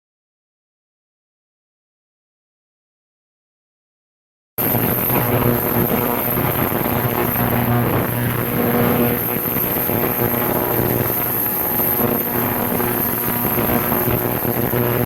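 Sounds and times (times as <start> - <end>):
engine running steadily: 4.6 - 15.0
thin high whine: 4.6 - 15.0.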